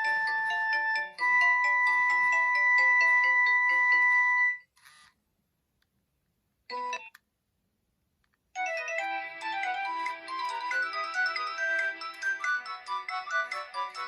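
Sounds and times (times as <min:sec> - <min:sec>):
electronic ringtone melody: 0:00.0 - 0:04.7, 0:08.6 - 0:14.0.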